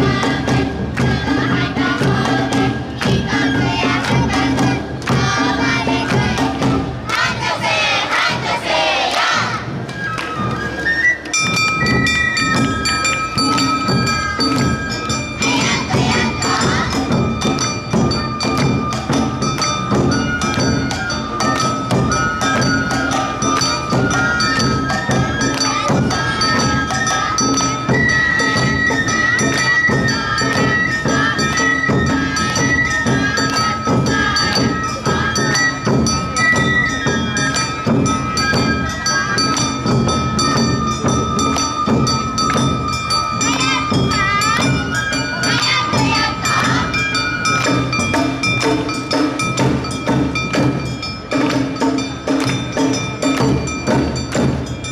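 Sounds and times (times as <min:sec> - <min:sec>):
bamboo flute melody: 0:00.0 - 0:54.9
taiko drums: 0:00.0 - 0:54.9.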